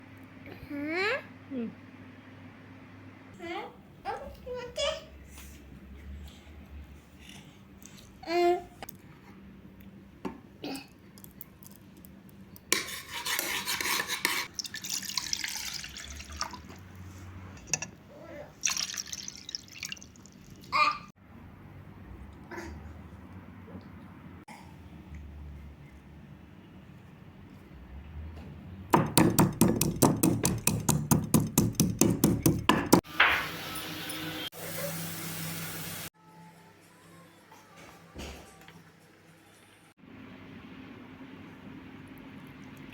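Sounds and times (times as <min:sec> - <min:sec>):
water flowing: 0:14.5 - 0:17.1, 0:18.6 - 0:20.7
rapid even knocking: 0:28.9 - 0:33.0.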